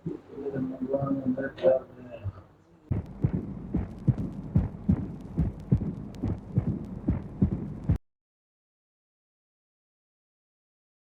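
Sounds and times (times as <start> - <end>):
heart murmur: 2.2 - 8.0
heartbeat through stethoscope: 2.9 - 8.0.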